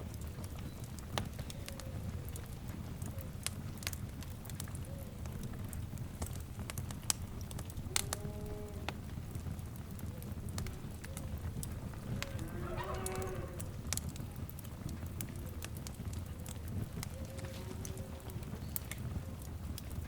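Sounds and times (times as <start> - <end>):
wood fire crackling: 0.0 - 20.0
animal call: 12.1 - 13.7.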